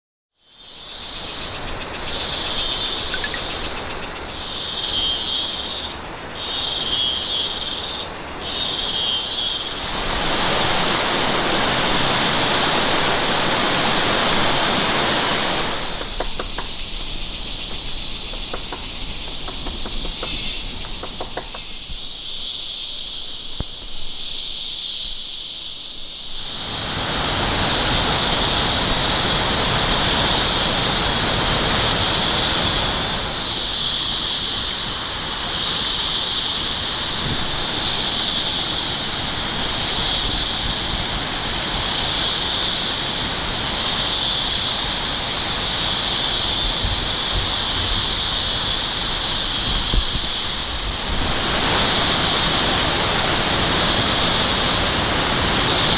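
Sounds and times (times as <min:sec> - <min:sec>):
waterfall rushing: 0:02.3 - 0:21.6, 0:26.4 - 0:33.6, 0:47.1 - 0:55.9.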